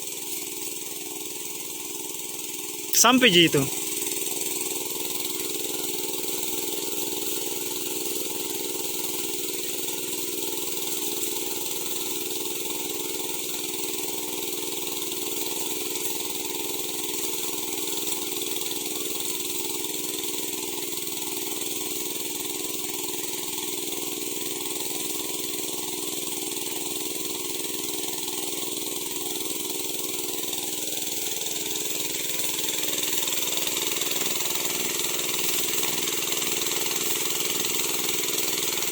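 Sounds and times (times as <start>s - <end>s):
power sprayer engine running: 30.9s - 38.9s.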